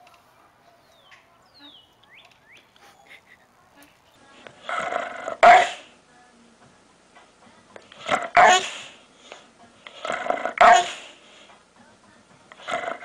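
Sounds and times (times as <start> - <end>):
dog barking: 5.4 - 5.9, 8.0 - 8.9, 10.5 - 11.1.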